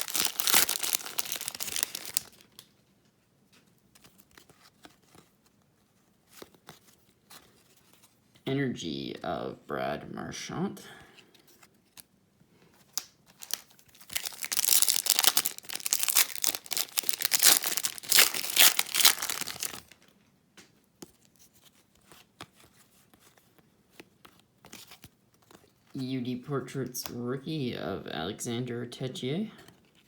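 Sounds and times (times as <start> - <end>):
foil wrapper tearing and crinkling: 0.0 - 2.6, 12.9 - 20.0
cards clicking and rustling: 0.0 - 2.8, 12.8 - 20.1.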